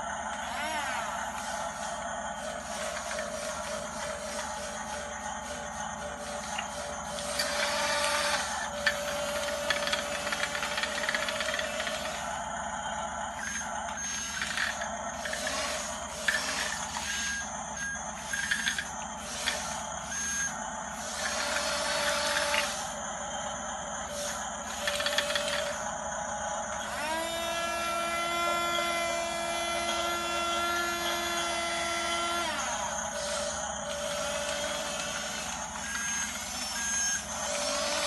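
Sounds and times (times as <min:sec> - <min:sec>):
small electric motors whining: 0:00.0 - 0:38.0
tracks rattling and scraping candies: 0:00.3 - 0:12.5, 0:13.4 - 0:23.0, 0:24.1 - 0:25.8, 0:32.2 - 0:38.0.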